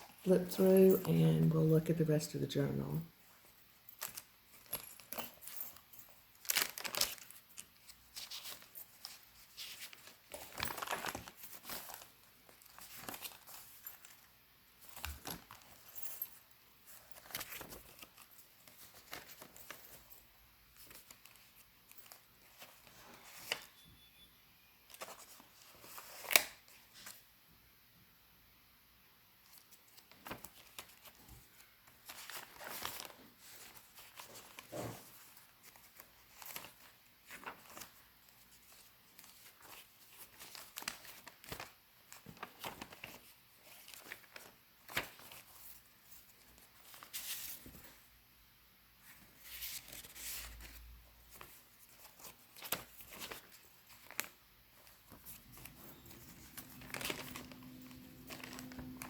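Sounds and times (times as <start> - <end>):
paper rustling and crinkling: 3.2 - 23.8, 24.9 - 27.3, 29.4 - 48.1, 49.0 - 59.0
paper pages being turned: 6.4 - 14.2, 16.8 - 20.0, 20.7 - 23.7, 24.9 - 27.2, 29.4 - 48.1, 49.0 - 59.0
faint steady tone: 23.5 - 25.4.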